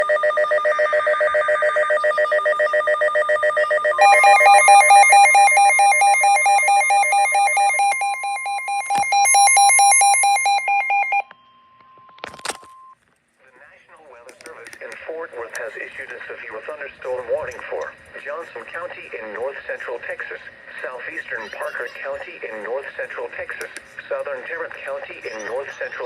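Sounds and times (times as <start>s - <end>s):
pulsing alarm: 0.0s - 11.4s
rapid trilling alarm: 0.4s - 11.3s
steady long alert tone: 4.0s - 11.3s.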